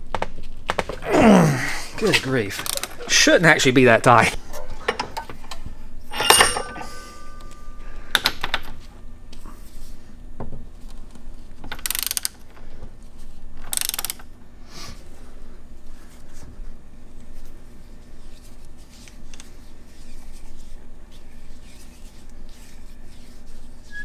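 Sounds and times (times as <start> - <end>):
ringing metal clank: 6.1 - 7.9
ratchet wrench clicking: 11.8 - 12.4, 13.7 - 14.2.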